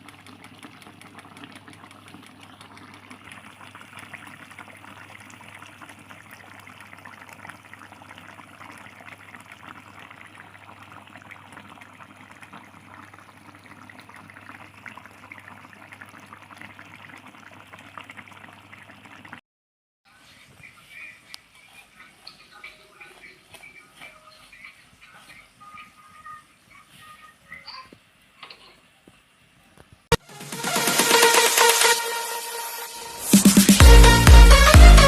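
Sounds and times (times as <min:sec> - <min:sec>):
dense bubbling of simmering food: 0:00.0 - 0:19.4.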